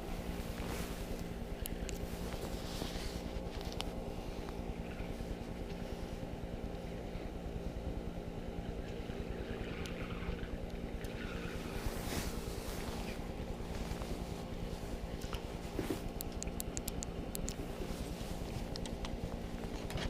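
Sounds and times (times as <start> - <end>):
low mechanical hum: 0.0 - 20.0
sharp high clicks: 16.2 - 17.6.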